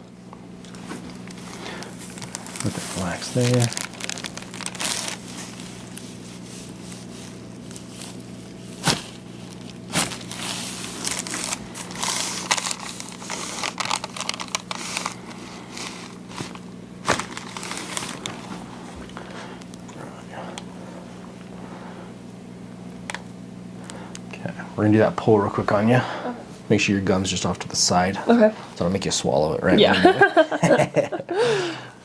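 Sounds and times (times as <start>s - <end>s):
steady low hum: 0.0s - 32.0s
crinkling and rustling on table: 0.6s - 19.8s.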